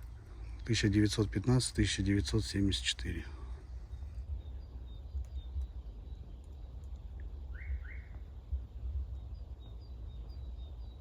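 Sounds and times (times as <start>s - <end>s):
bird chirping: 0.0s - 11.0s
steady low rumble: 0.0s - 11.0s
faint high chirps: 3.8s - 11.0s.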